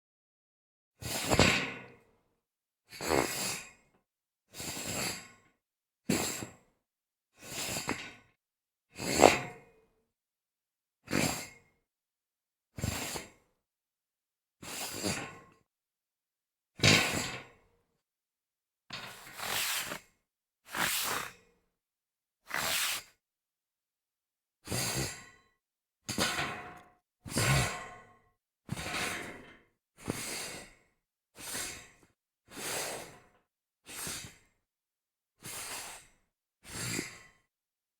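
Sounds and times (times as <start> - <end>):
shoe scraping on metal grate: 18.9 - 20.0, 20.7 - 21.3, 22.5 - 23.0.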